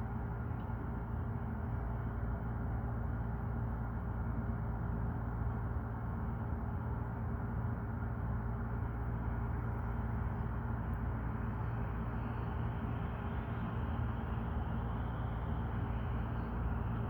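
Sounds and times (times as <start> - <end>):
faint constant hum: 0.0 - 17.0
distant city traffic rumble: 7.8 - 17.0.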